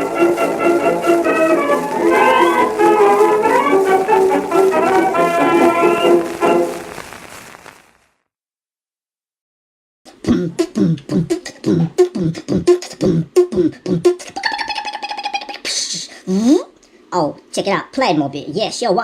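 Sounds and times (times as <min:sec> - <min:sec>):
person beatboxing: 0:10.1 - 0:16.7.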